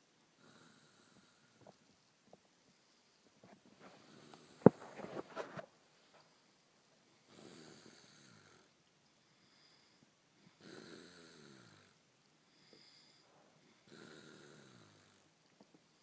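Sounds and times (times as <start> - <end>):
man snoring faintly: 0.4 - 1.8, 3.8 - 5.6, 7.2 - 16.0.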